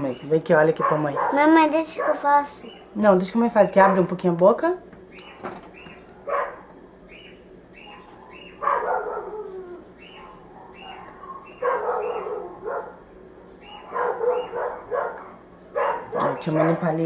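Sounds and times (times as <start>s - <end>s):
dog barking: 0.8s - 2.3s, 3.8s - 4.1s, 6.2s - 6.7s, 7.8s - 13.0s, 13.6s - 17.0s.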